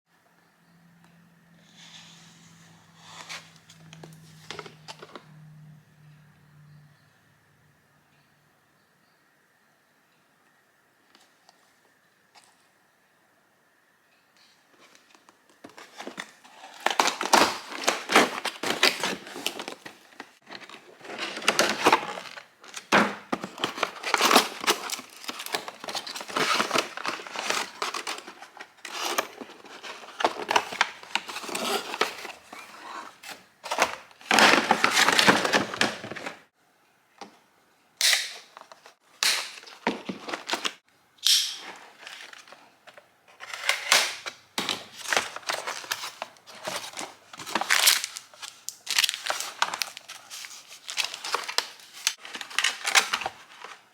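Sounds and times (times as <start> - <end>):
packaging crinkling and tearing: 15.7 - 36.4, 43.4 - 53.9.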